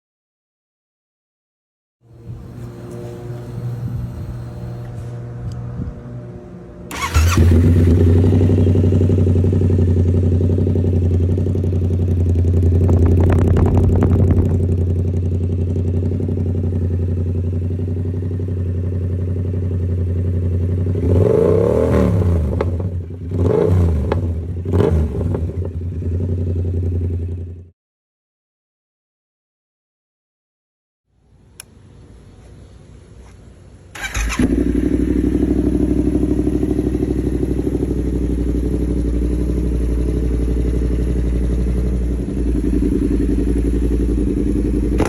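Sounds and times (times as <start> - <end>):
motorcycle engine revving: 2.0 - 27.7, 34.0 - 45.0
motorcycle engine starting and idling: 2.1 - 5.8, 6.8 - 27.7, 33.8 - 45.0.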